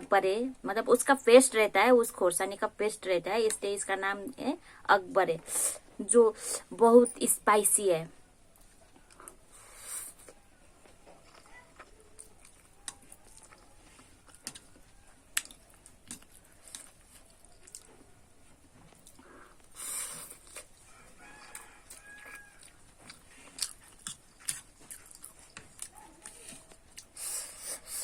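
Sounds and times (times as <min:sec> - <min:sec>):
slurping noodles: 0:19.1 - 0:20.8, 0:27.1 - 0:28.0.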